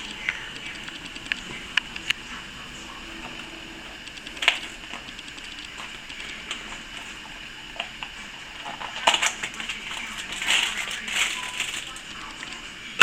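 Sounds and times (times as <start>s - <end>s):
typewriter mechanism clicking: 3.9s - 6.7s.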